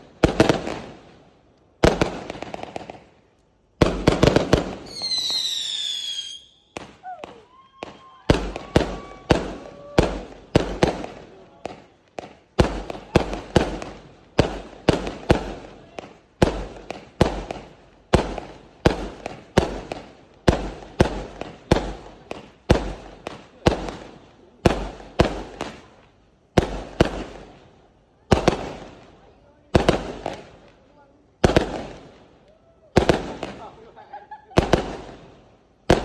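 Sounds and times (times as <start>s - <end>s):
fireworks bangs: 0.0s - 1.2s, 1.8s - 3.2s, 3.8s - 32.3s, 32.9s - 36.0s.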